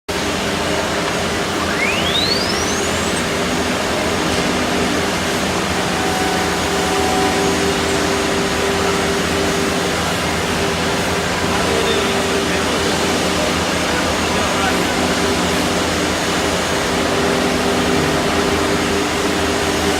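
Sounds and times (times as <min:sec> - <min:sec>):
wood router running: 0:00.2 - 0:19.9
whistle rising in pitch: 0:01.5 - 0:13.0.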